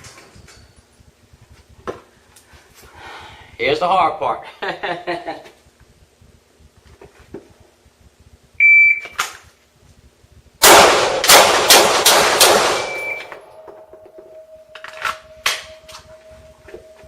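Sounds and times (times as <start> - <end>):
shot timer beep: 8.6 - 9.2, 12.8 - 16.2
pistol shots echoing: 10.6 - 13.0.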